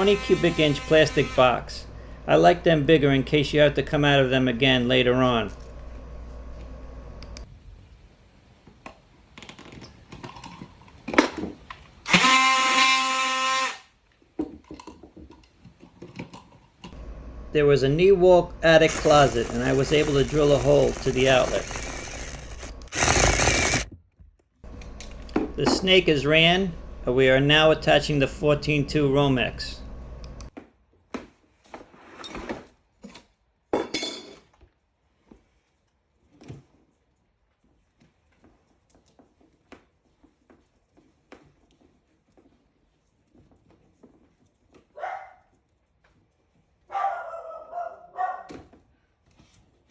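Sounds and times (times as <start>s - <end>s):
power drill running: 0.0s - 3.8s, 12.1s - 13.9s, 17.0s - 23.9s, 24.7s - 30.5s
cable clinking and scraping: 18.6s - 23.9s.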